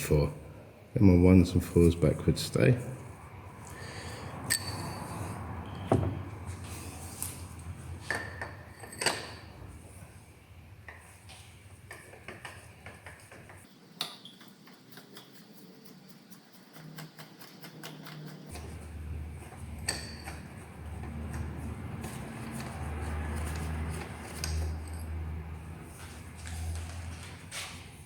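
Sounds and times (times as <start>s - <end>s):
metal tools clinking: 4.5s - 5.8s, 8.0s - 9.6s, 19.8s - 20.6s, 23.3s - 25.4s.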